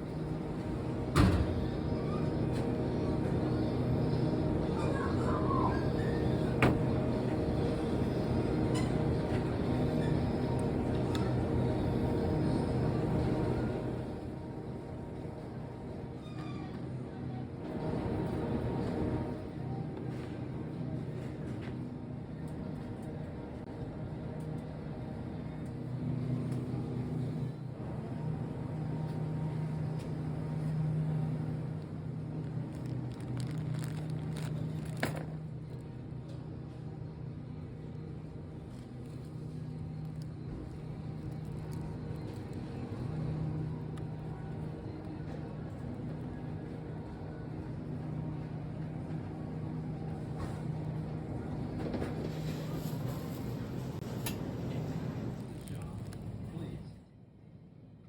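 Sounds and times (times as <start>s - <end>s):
low mechanical hum: 0.0s - 58.0s
road rumble: 31.1s - 36.0s.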